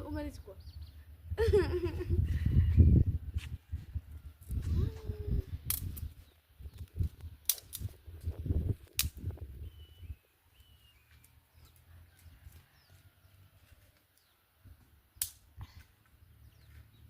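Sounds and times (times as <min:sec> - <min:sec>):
sharp snaps: 0:05.6 - 0:08.0, 0:08.8 - 0:09.4, 0:15.1 - 0:15.6.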